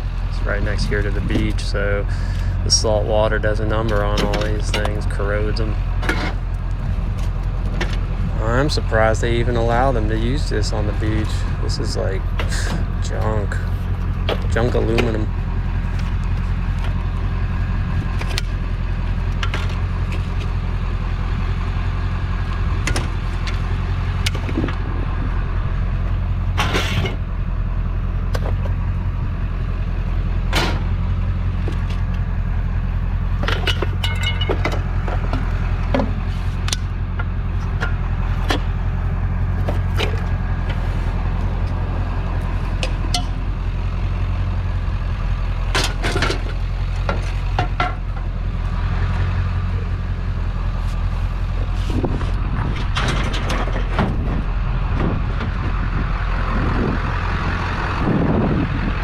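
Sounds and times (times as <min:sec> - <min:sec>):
vehicle engine idling: 0:00.0 - 0:59.0
sharp knocks and clanks: 0:02.2 - 0:06.5, 0:12.2 - 0:15.3, 0:22.8 - 0:23.6, 0:33.4 - 0:38.8, 0:42.7 - 0:43.6, 0:45.7 - 0:48.3, 0:52.2 - 0:55.6.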